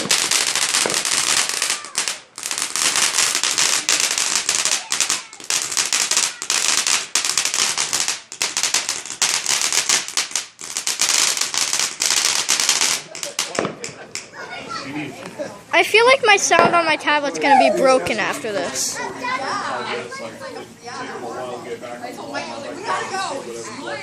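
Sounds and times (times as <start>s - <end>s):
fireworks crackling: 0.0s - 19.0s.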